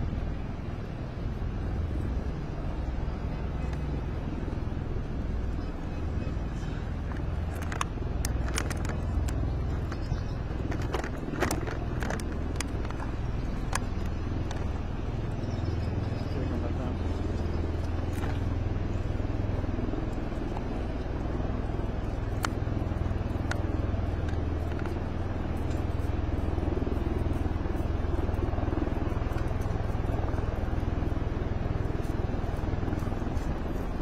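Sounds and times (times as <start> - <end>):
low engine rumble: 0.0 - 34.0
faint clicks: 7.0 - 15.4.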